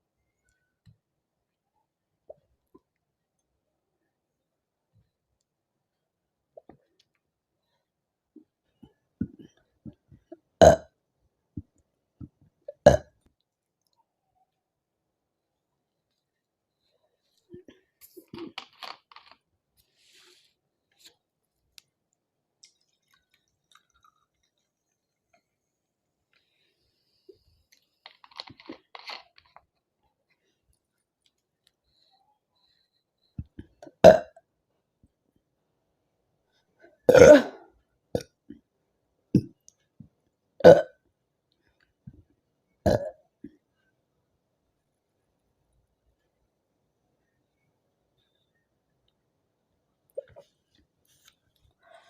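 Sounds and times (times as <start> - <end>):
woman burping: 10.6 - 10.9, 12.7 - 13.1, 34.0 - 34.4, 37.1 - 37.6, 40.6 - 41.0, 42.9 - 43.2.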